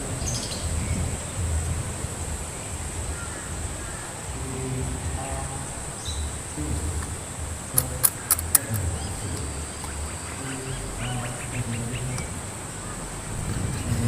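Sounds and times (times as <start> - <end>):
ducks quacking: 7.4 - 14.0.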